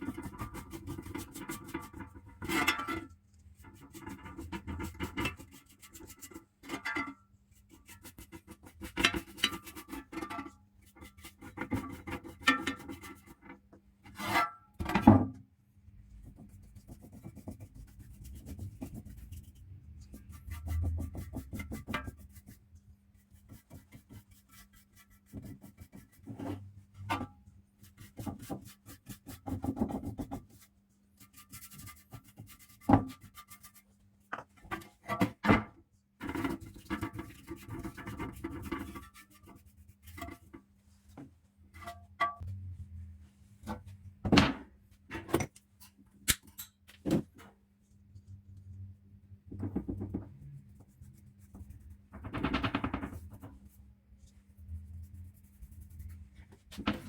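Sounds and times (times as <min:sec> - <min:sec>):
hand scraping fan parts: 0:16.8 - 0:22.6, 0:36.2 - 0:42.5.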